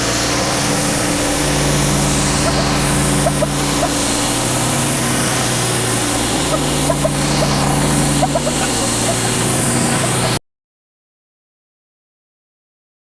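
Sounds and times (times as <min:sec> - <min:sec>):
high-pressure water hissing on concrete: 0:00.0 - 0:10.4
pressure washer engine hum: 0:00.0 - 0:10.4.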